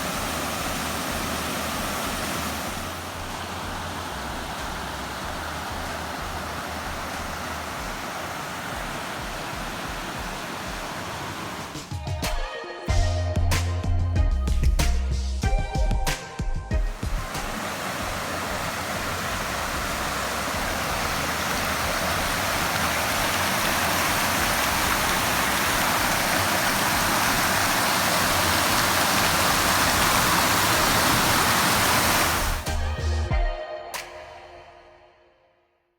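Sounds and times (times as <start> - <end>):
waterfall rushing: 0.0 - 12.0, 16.9 - 32.8.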